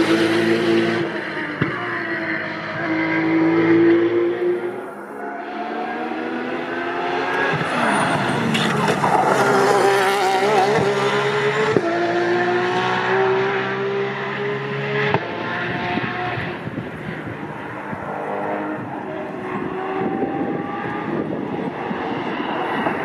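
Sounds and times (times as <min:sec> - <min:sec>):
racing car engine at full throttle: 0:00.0 - 0:23.0.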